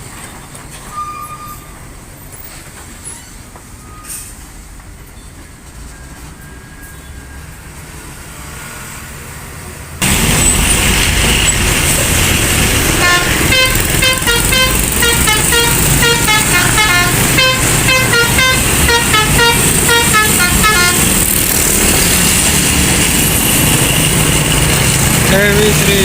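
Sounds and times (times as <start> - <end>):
heavy traffic noise: 0.0 - 26.0
bus musical horn tune: 12.8 - 21.6.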